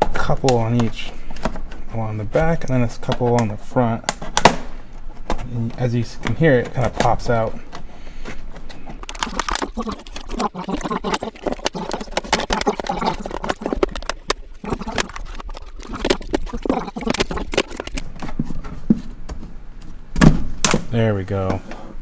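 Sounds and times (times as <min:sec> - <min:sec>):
plastic clips snapping: 0:00.0 - 0:09.8, 0:20.2 - 0:21.0.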